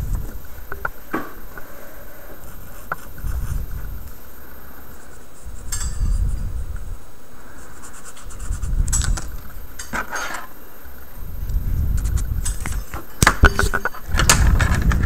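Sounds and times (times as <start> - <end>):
low rumbling handling noise: 11.2 - 15.0.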